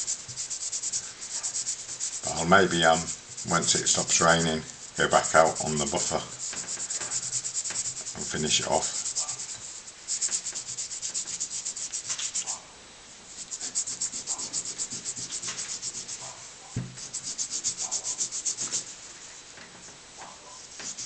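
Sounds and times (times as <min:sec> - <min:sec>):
lamp being rubbed by hand: 0:00.0 - 0:12.6, 0:13.3 - 0:19.5, 0:20.2 - 0:21.0
dull knock: 0:16.8 - 0:17.0.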